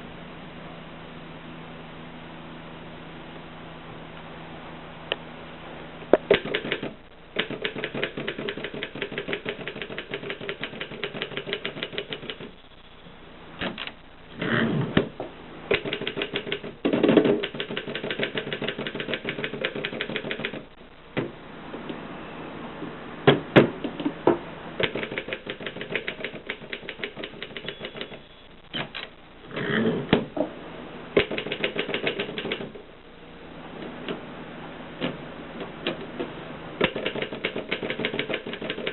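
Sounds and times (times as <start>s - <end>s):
typewriter key strikes: 6.3s - 12.5s, 15.7s - 20.6s, 24.8s - 28.2s, 31.2s - 32.7s, 36.8s - 38.9s
heavy typewriter clunks: 15.7s - 20.6s, 36.8s - 38.9s.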